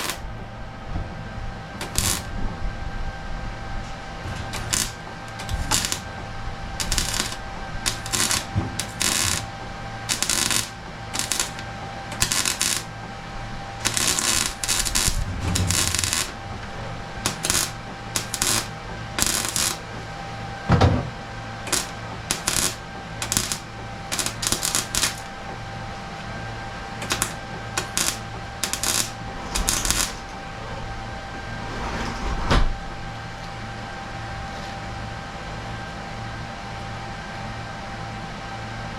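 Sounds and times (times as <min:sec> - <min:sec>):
welder crackling: 0:00.0 - 0:00.4, 0:01.8 - 0:02.4, 0:04.4 - 0:20.0, 0:21.6 - 0:25.7, 0:26.6 - 0:30.5
steady shop hum: 0:00.0 - 0:38.9.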